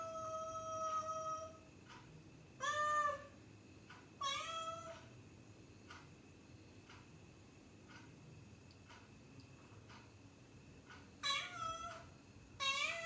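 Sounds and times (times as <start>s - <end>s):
cat meowing: 4.2s - 5.0s, 11.2s - 12.0s, 12.6s - 13.0s.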